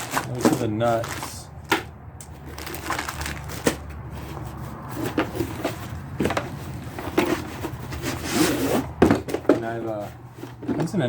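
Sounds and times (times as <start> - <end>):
hard parts knocking and clicking: 9.0 - 11.0.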